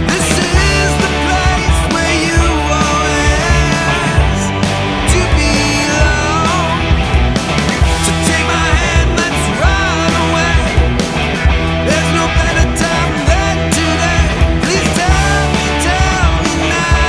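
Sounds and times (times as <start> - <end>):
bass: 0.0 - 17.0
distorted electric guitar: 0.0 - 17.0
steady drum beat: 0.0 - 17.0.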